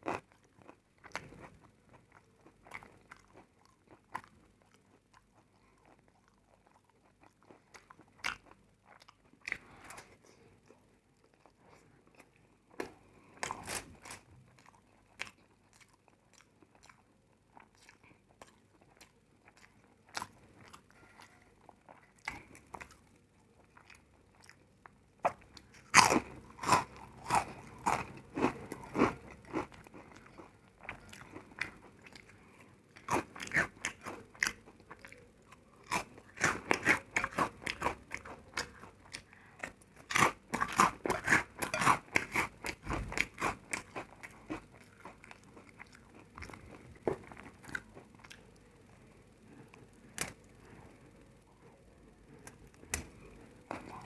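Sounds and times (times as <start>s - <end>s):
person chewing crunchy food: 0.0s - 51.1s, 52.3s - 54.0s.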